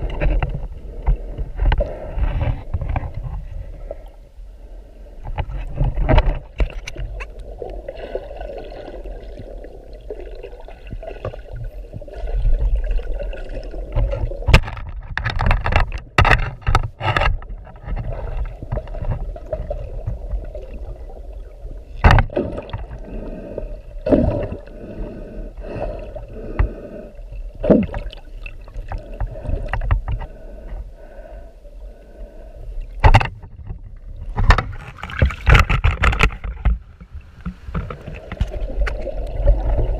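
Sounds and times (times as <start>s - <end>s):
muffled water sloshing: 0.0s - 39.9s
sharp knocks and clicks: 14.0s - 18.0s, 33.0s - 39.0s.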